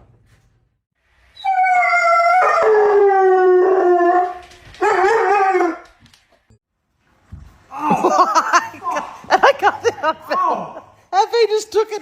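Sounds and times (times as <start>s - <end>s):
dog howling: 1.4s - 5.9s.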